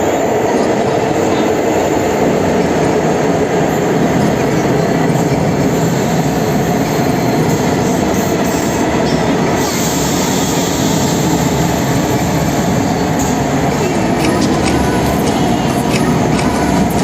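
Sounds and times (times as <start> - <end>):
electric train rumbling: 0.0 - 17.0.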